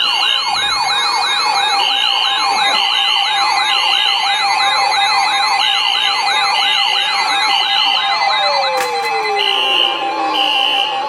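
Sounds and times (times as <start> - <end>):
fast warbling high tone: 0.0 - 11.0
steady alarm tone: 0.0 - 11.0
siren-like rising sweep: 5.2 - 11.0.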